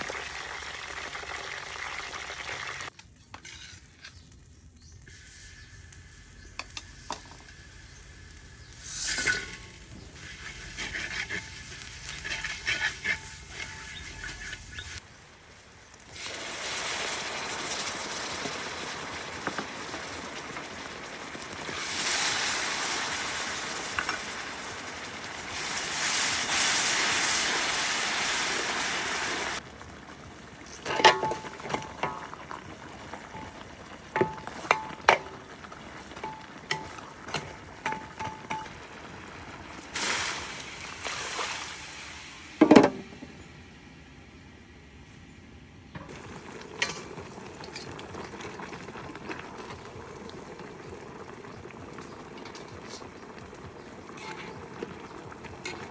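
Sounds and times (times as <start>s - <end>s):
cooking hiss: 0.0s - 43.5s, 46.1s - 55.9s
utensils clinking on cookware: 9.0s - 14.7s, 30.8s - 32.4s, 33.2s - 38.9s.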